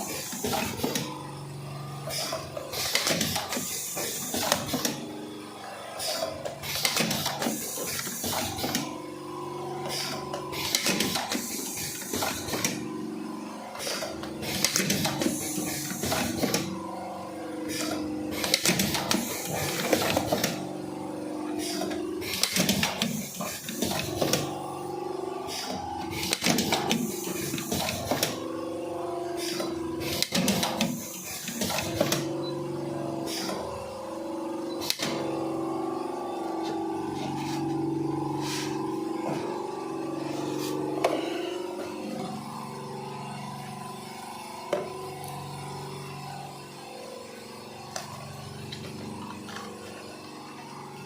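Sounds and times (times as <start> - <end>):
machine motor hum: 0.0 - 51.0
sharp machine clacks: 17.8 - 20.6, 25.6 - 28.4.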